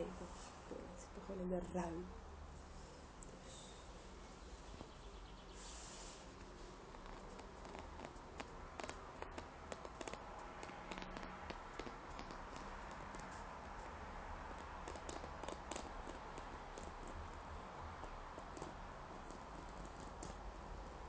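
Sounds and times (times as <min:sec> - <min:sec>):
faint steady hum: 0:00.0 - 0:21.0
fingernails tapping and scratching fabric: 0:06.4 - 0:20.9.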